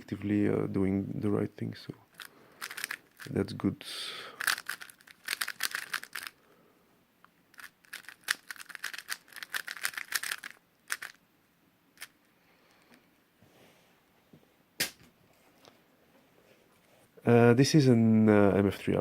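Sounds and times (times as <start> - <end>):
puzzle cube plastic clicks: 2.1 - 3.3, 4.4 - 6.4, 7.5 - 11.2.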